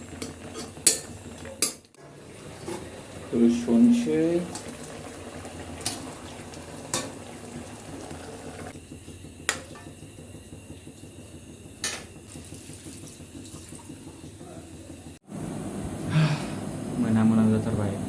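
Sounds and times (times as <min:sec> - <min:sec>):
utensils clinking on pots: 0:00.2 - 0:01.9, 0:06.9 - 0:07.2.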